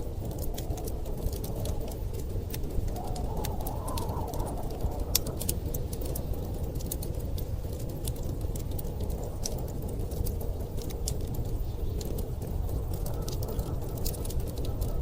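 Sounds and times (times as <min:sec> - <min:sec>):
blizzard wind rumble: 0:00.0 - 0:15.0
wood fire crackling and popping: 0:00.0 - 0:15.0.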